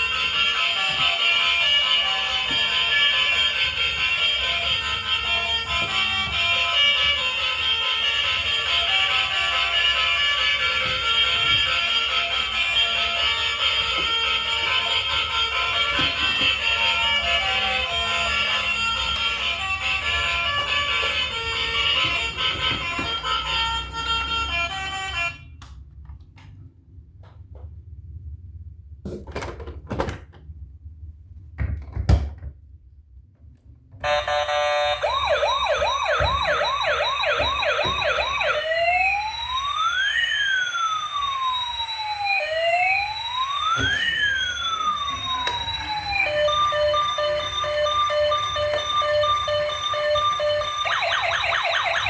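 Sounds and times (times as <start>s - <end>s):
music: 0.0s - 25.4s
toy electronic siren: 0.0s - 25.5s, 34.0s - 52.0s.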